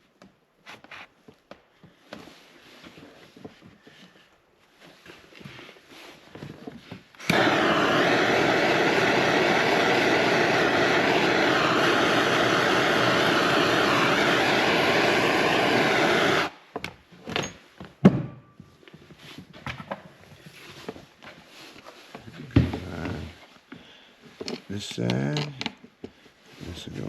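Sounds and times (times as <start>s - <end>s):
loud steady rushing noise: 7.3s - 16.5s.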